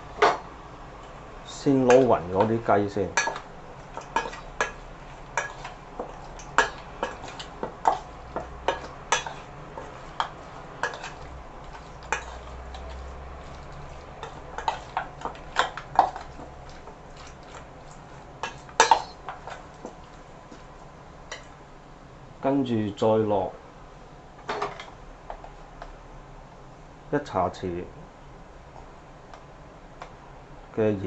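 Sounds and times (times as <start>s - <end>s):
utensil clinking against bowl: 1.8s - 4.8s, 5.4s - 17.6s.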